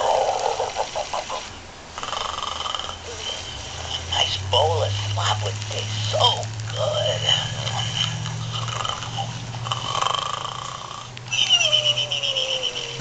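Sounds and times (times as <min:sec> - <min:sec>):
electronic toy snoring: 0:02.0 - 0:11.2.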